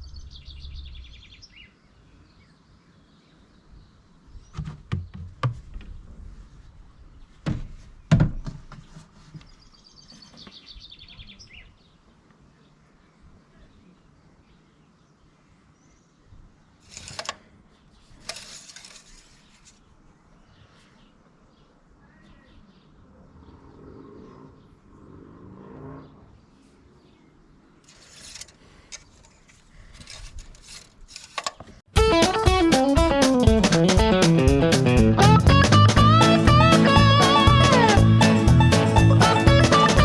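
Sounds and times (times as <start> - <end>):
bird trill: 0.0 - 1.7
rustling: 16.7 - 21.0, 27.8 - 31.8.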